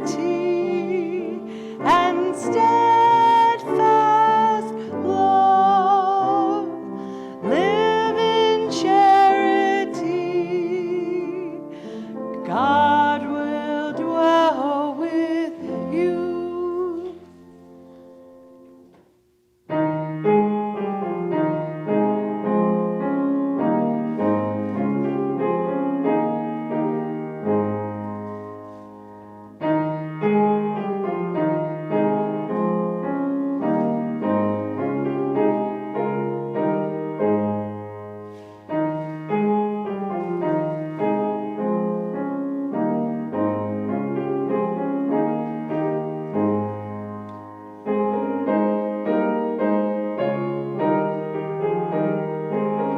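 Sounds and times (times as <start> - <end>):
slow hymn-like solo piano: 0.0 - 52.9.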